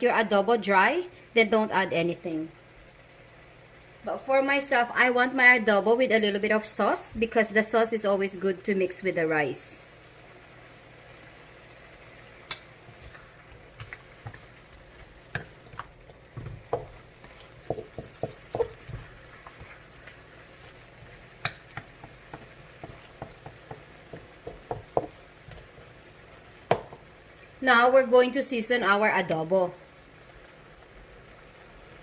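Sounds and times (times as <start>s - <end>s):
meat sizzling in a pan: 2.5s - 5.1s, 6.0s - 27.6s, 29.8s - 32.0s
utensil scraping and knocking pan: 15.0s - 25.7s.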